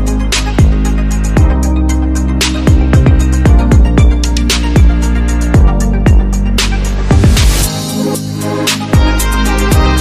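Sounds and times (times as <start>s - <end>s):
electronic music with steady beat: 0.0s - 10.0s
deep bass kicks: 2.7s - 5.0s.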